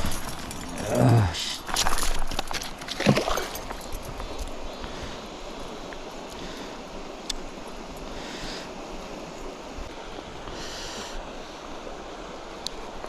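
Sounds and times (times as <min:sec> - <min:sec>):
river water flowing: 0:00.0 - 0:13.0.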